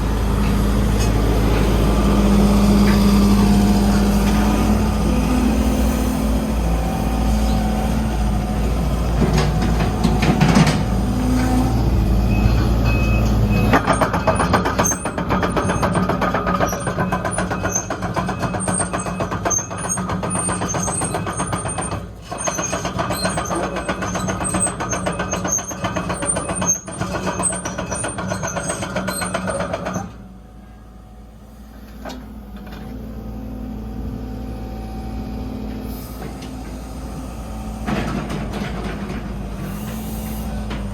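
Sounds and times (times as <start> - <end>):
excavator diesel engine hum: 0.0 - 40.9
loud fast machine clatter: 13.7 - 30.1.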